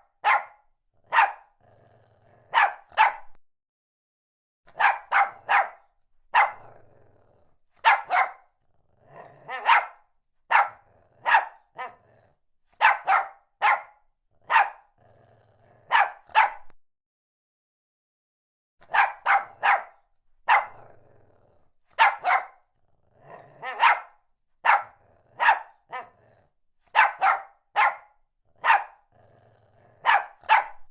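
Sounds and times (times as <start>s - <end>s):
dog barking: 0.0s - 1.6s, 2.5s - 3.4s, 4.7s - 6.8s, 7.8s - 8.6s, 9.4s - 12.1s, 12.7s - 15.0s, 15.8s - 16.8s, 18.8s - 20.9s, 21.9s - 22.7s, 23.6s - 26.2s, 26.9s - 29.1s, 30.0s - 30.9s.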